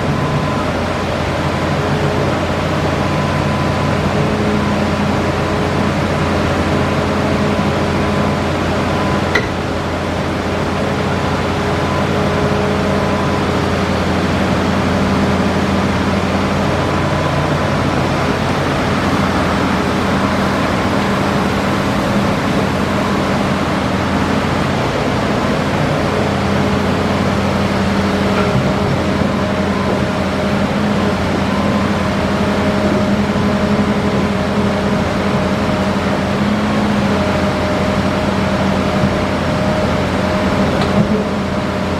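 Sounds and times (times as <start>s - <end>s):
excavator diesel engine running: 0.0s - 41.9s
short knock: 9.3s - 9.6s.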